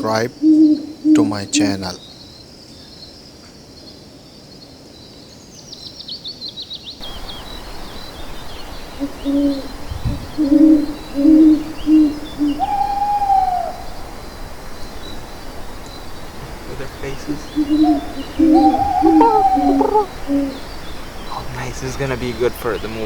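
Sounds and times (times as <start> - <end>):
owl hooting: 0.0 - 2.0, 7.0 - 23.0
high falling pips: 15.2 - 23.0.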